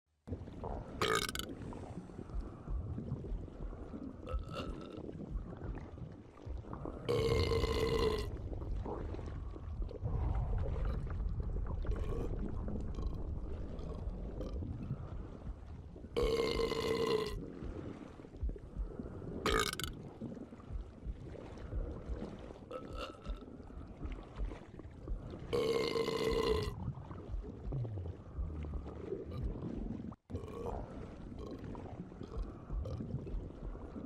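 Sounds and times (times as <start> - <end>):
man belching: 1.0 - 1.4, 7.1 - 8.3, 16.2 - 17.4, 19.5 - 19.9, 25.6 - 26.7.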